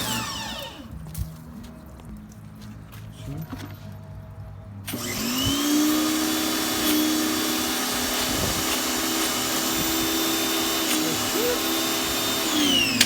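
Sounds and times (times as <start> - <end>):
pressure washer motor hum: 0.0 - 0.9, 4.9 - 13.0.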